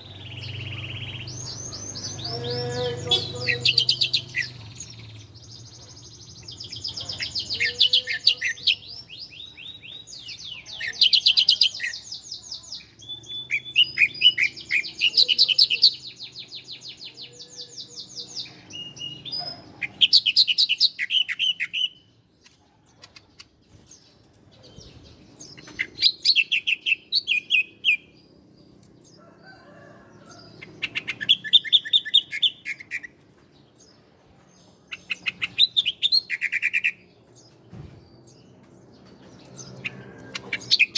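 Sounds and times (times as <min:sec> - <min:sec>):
bird singing high chattering trills: 0:00.0 - 0:22.1, 0:38.2 - 0:40.9.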